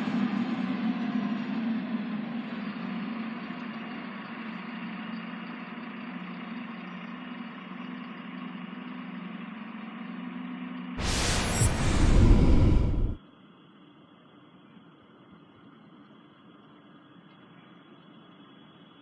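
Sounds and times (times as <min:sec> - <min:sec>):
hiss: 0:11.0 - 0:13.2
loud rush of noise: 0:11.0 - 0:13.2.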